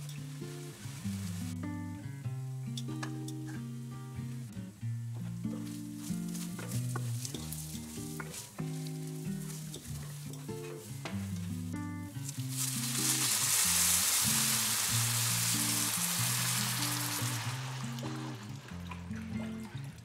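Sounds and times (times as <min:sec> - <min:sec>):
food sizzling in a hot pan: 0:00.0 - 0:02.2, 0:05.5 - 0:11.0, 0:12.2 - 0:19.2
soft background music: 0:00.0 - 0:20.0.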